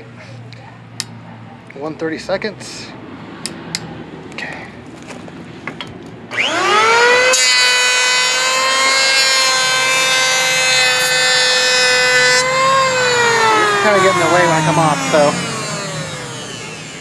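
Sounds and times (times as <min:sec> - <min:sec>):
cutter head shaving wood: 0:06.3 - 0:17.0
electric hand planer whining: 0:06.3 - 0:17.0.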